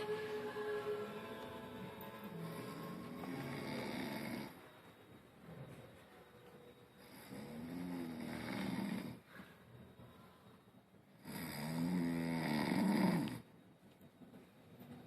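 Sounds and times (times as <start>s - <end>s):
person snoring: 2.5s - 4.6s, 7.1s - 9.2s, 11.2s - 13.4s.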